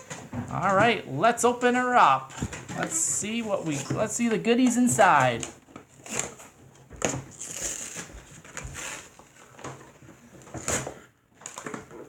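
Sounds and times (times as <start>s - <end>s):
cardboard box tearing open: 5.9s - 9.6s, 10.4s - 11.6s.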